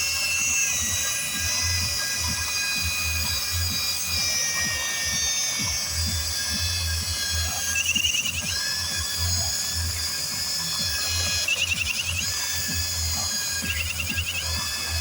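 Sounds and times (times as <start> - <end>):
angle grinder running: 0.0 - 15.0
short warbling chirp: 7.5 - 8.8, 10.9 - 12.8, 13.4 - 15.0.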